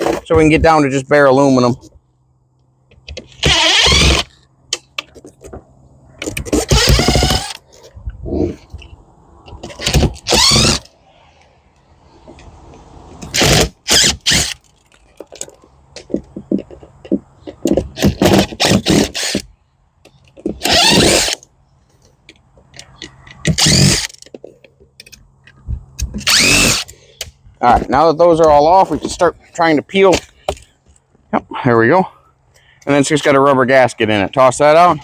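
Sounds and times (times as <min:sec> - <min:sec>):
cordless drill whirring: 0:03.4 - 0:04.3, 0:06.6 - 0:07.6, 0:09.8 - 0:10.8, 0:20.6 - 0:21.4, 0:23.6 - 0:24.1, 0:26.2 - 0:26.9.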